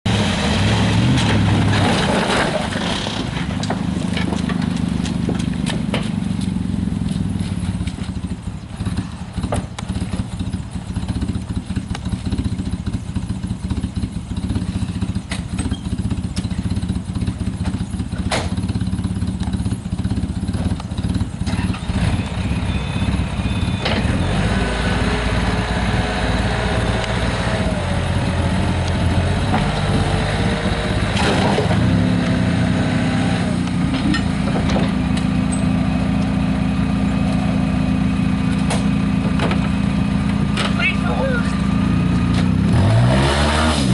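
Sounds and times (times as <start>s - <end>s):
car engine idling unevenly: 1.5s - 24.1s, 33.6s - 42.6s.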